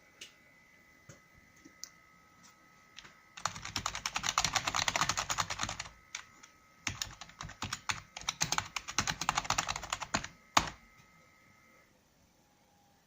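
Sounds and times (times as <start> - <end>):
fast typing on a keyboard: 3.4 - 10.8.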